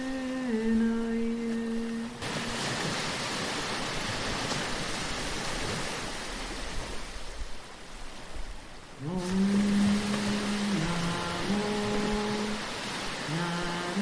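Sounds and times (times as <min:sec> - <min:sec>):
sea waves washing in: 0:00.0 - 0:14.0.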